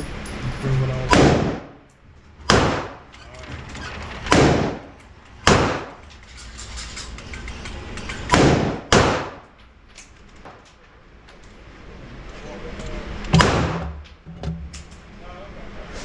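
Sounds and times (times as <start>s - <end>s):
gunshots with ringing echo: 1.1s - 1.8s, 2.4s - 3.0s, 4.3s - 4.9s, 5.5s - 6.0s, 8.3s - 9.4s, 13.4s - 13.9s.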